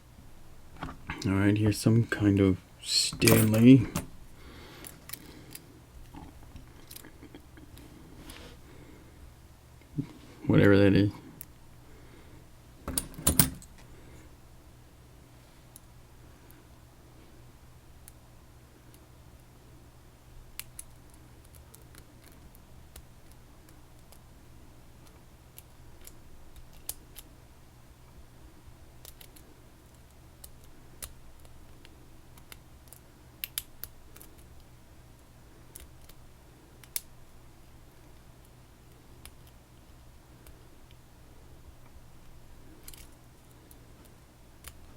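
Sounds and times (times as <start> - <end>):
low steady hum: 0.0 - 44.9
lock picks clicking in padlock: 12.9 - 13.7.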